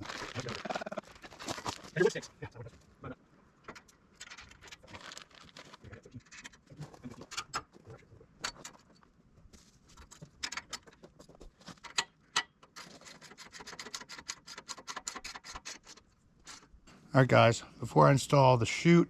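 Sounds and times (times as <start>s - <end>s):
metallic clicks and taps of tools: 11.8s - 12.8s.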